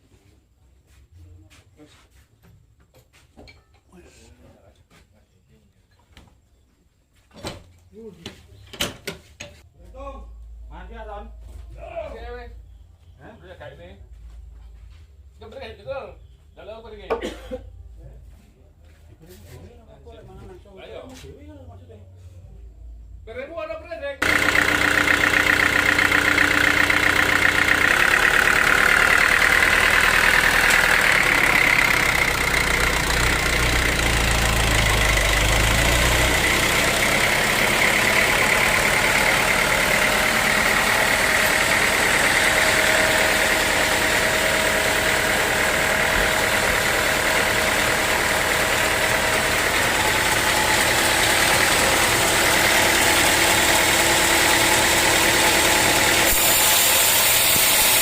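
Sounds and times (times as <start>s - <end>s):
engine running: 24.2s - 58.0s.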